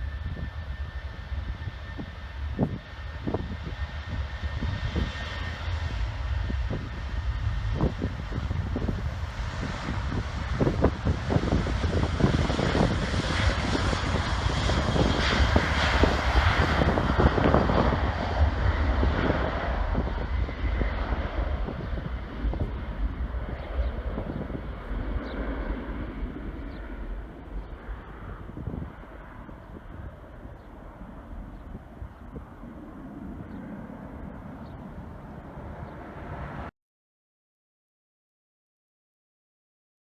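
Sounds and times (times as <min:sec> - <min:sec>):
jet airliner passing: 0:00.0 - 0:36.7.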